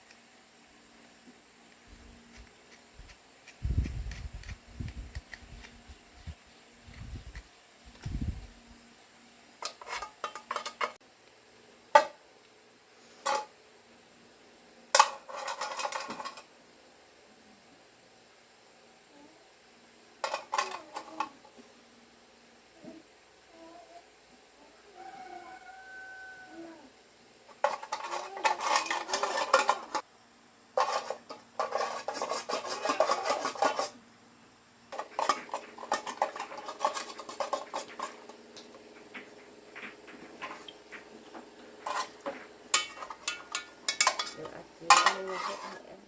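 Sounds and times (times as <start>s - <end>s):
metal parts and tools clattering: 9.6s - 11.0s, 13.2s - 13.5s, 15.0s - 16.5s, 20.2s - 21.3s, 27.5s - 30.0s, 30.8s - 34.0s, 34.9s - 38.4s, 41.8s - 45.9s.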